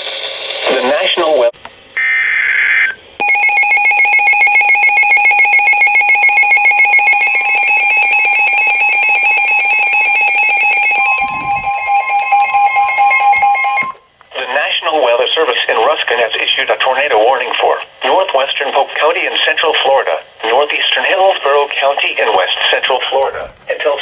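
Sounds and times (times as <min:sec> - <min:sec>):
data warble burst: 0:02.0 - 0:14.0
harsh steady alert tone: 0:02.0 - 0:14.1.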